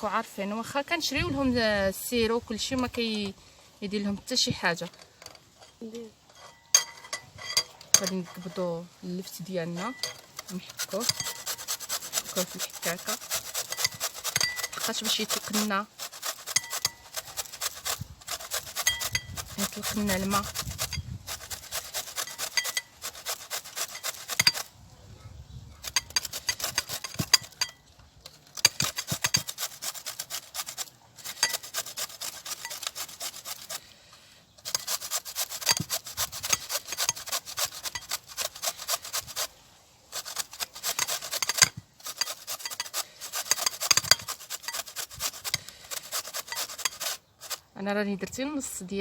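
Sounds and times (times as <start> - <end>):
turnip grating on hand grater: 7.4 - 24.7, 25.8 - 27.8, 28.5 - 33.9, 34.6 - 47.6.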